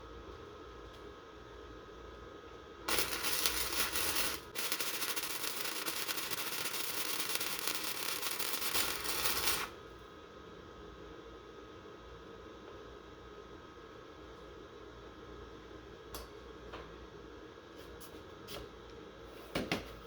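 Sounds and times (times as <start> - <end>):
welding arc crackling: 2.9 - 9.8.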